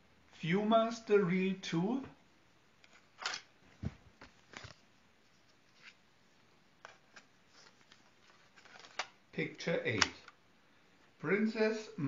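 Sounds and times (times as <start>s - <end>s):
small handling clicks and knocks: 8.6s - 9.2s.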